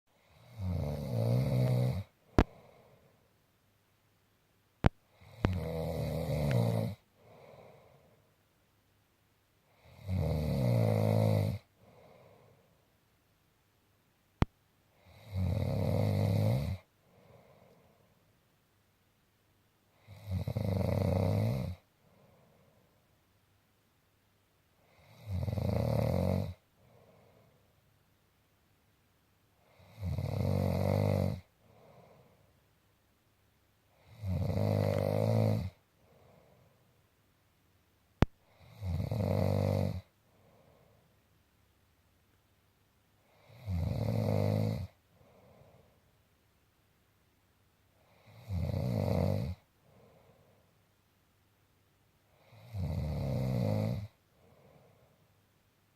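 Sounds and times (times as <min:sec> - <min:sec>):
person snoring: 0:00.2 - 0:03.0, 0:05.1 - 0:08.2, 0:09.7 - 0:12.6, 0:15.0 - 0:17.8, 0:20.0 - 0:22.3, 0:24.8 - 0:27.5, 0:29.6 - 0:32.2, 0:34.0 - 0:36.5, 0:38.5 - 0:40.9, 0:43.2 - 0:45.8, 0:48.0 - 0:50.4, 0:52.4 - 0:55.1
breathy breath: 0:02.2 - 0:03.3, 0:07.1 - 0:08.4, 0:11.8 - 0:12.9, 0:17.0 - 0:18.2, 0:22.0 - 0:23.1, 0:26.8 - 0:27.8, 0:31.6 - 0:32.6, 0:36.0 - 0:37.0, 0:40.2 - 0:41.2, 0:45.1 - 0:46.1, 0:49.8 - 0:50.8, 0:54.3 - 0:55.4.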